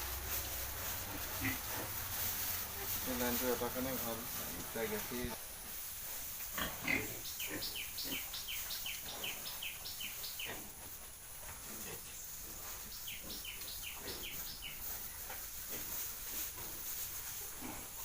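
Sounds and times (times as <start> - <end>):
bird chirping: 7.0 - 10.7, 12.2 - 14.9.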